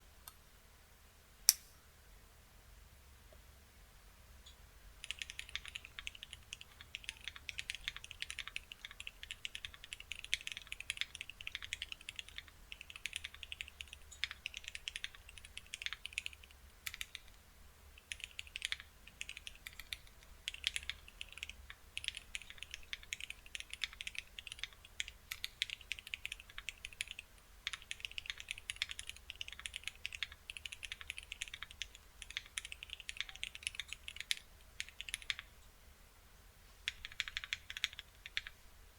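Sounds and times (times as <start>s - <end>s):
fast mechanical keyboard typing: 5.0s - 17.4s, 18.0s - 35.5s, 36.9s - 38.6s.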